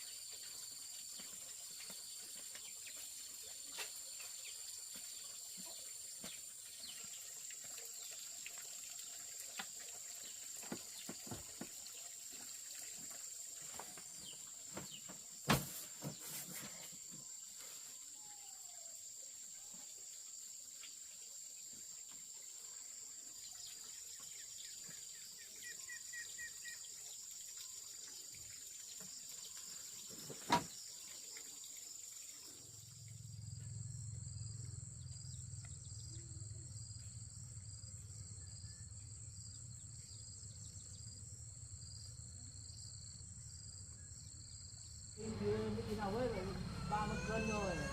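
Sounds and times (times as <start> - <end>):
bird call: 45.2 - 47.9.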